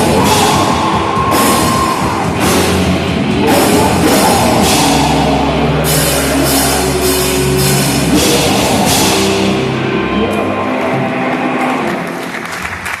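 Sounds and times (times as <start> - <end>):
drums with cymbal crashes: 0.0 - 9.7
bass guitar: 0.0 - 13.0
electric guitars: 0.0 - 13.0.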